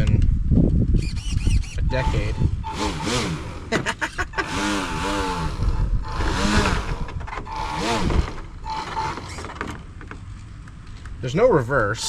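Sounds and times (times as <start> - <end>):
airboat motor and propeller revving: 1.4 - 9.7
steady high whine: 1.8 - 9.6.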